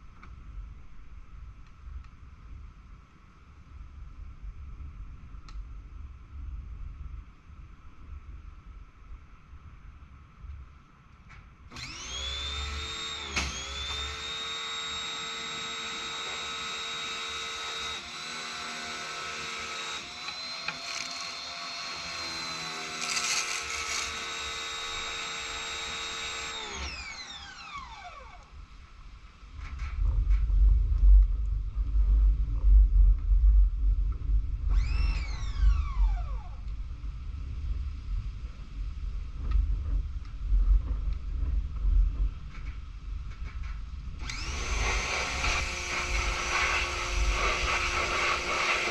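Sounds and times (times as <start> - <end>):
pressure washer motor whine: 11.7 - 28.5, 34.7 - 36.6, 44.2 - 48.9
wind rumble on microphone: 29.4 - 44.3.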